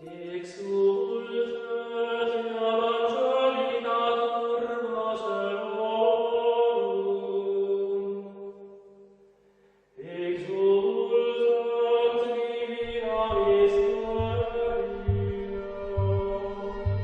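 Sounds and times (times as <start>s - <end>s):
voices chanting long notes: 12.8s - 17.0s
steady low drone: 12.9s - 17.0s.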